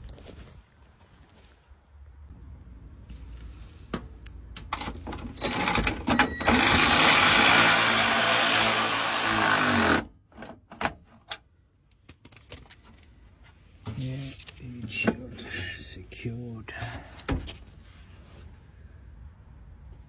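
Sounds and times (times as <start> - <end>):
cordless power wrench running: 5.4 - 10.1.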